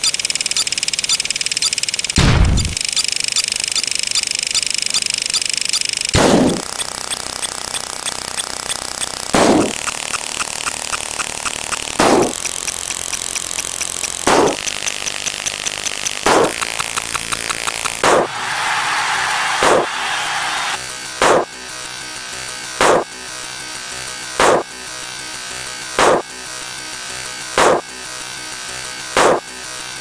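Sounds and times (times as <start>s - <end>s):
fast ticking with high tones: 2.8s - 20.6s
short sound effect: 18.0s - 20.8s.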